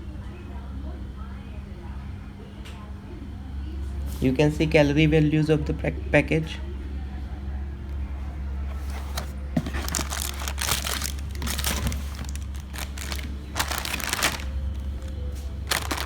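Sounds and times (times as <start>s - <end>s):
plastic packaging crinkling: 8.7s - 16.0s.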